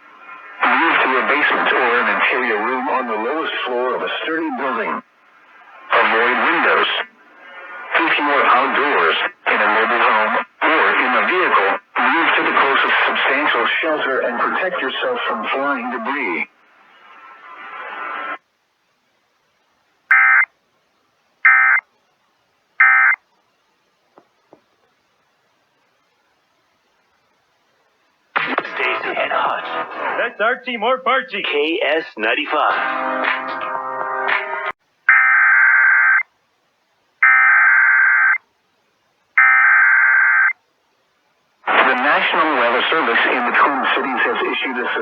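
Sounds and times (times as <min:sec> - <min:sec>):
radio station audio: 0:00.0 - 0:18.4, 0:28.3 - 0:36.2, 0:41.6 - 0:45.0.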